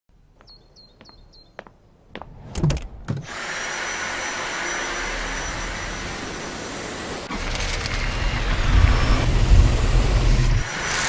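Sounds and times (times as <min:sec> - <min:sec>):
vacuum motor with high whine: 0:03.3 - 0:11.0.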